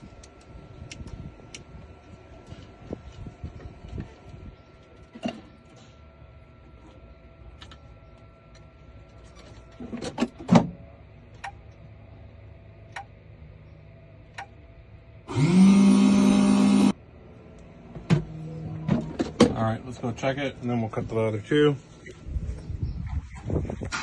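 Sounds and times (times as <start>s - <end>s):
key cutter motor running: 15.3s - 17.0s.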